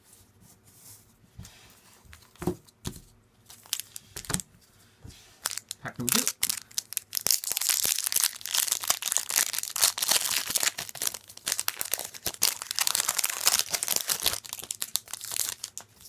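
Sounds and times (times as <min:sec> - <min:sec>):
foil wrapper crinkling and tearing: 0:03.5 - 0:04.4, 0:05.4 - 0:16.0.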